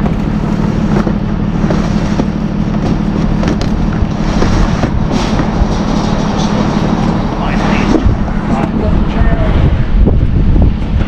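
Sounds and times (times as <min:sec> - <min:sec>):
plastic buckets clattering: 0:00.0 - 0:08.1
low engine hum: 0:00.0 - 0:11.0.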